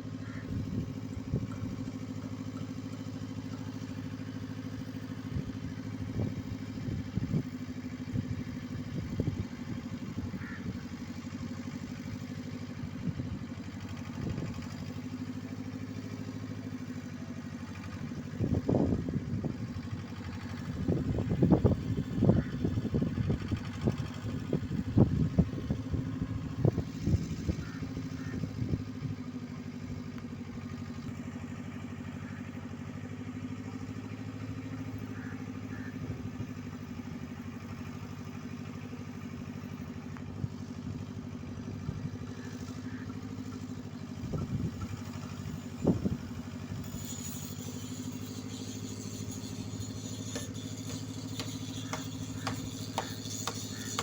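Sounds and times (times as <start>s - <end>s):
engine running steadily: 0.0s - 54.0s
sharp clatters: 46.8s - 54.0s.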